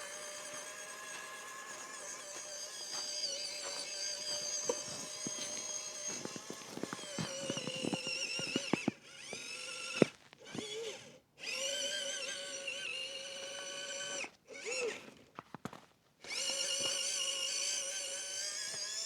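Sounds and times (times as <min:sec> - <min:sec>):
tyres crunching over rough ground: 0:00.0 - 0:10.7, 0:14.9 - 0:17.6
rc car motor whining: 0:00.0 - 0:15.2, 0:16.2 - 0:19.0.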